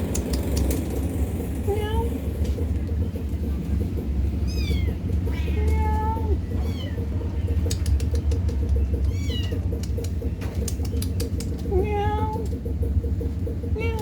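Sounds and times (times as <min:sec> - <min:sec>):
sharp clicks: 0:00.0 - 0:01.1, 0:07.5 - 0:12.6
steady low hum: 0:00.0 - 0:14.0
cats meowing: 0:01.6 - 0:02.2, 0:04.4 - 0:07.2, 0:08.8 - 0:10.0, 0:11.3 - 0:12.6, 0:13.7 - 0:14.0.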